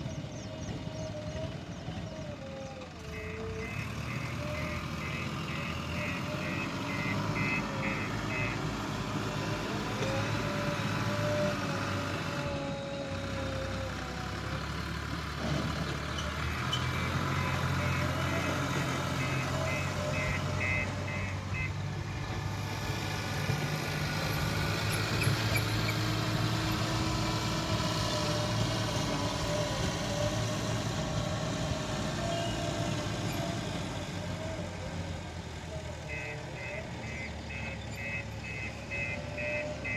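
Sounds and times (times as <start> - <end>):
diesel engine running: 0.0 - 39.9
reversing alarm beeping: 3.1 - 8.7, 16.8 - 21.8, 36.1 - 39.9.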